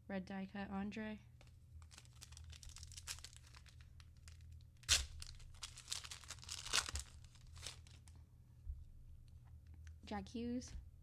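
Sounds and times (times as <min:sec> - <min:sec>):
card pack wrapper tearing: 0:01.8 - 0:08.1.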